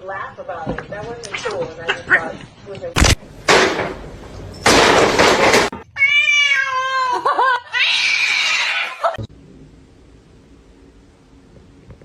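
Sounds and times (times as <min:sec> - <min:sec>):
cat meowing: 0:05.8 - 0:09.1.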